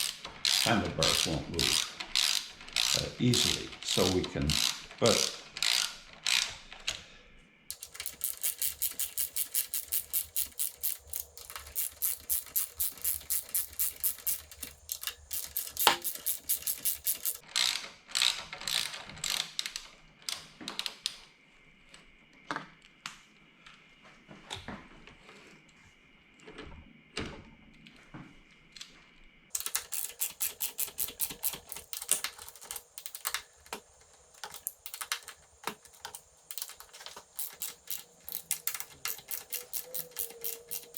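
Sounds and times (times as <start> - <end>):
ratcheting hex driver clicking: 0.0 - 6.5, 7.7 - 17.4, 29.6 - 40.9.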